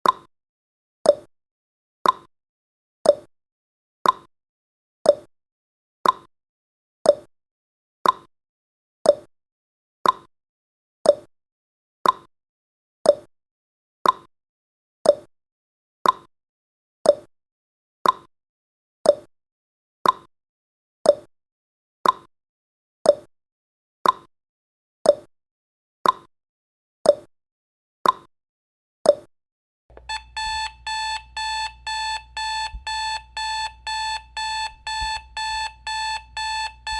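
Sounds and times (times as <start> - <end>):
alarm beeping: 29.9 - 36.9
clock-like timer ticking: 29.9 - 36.9.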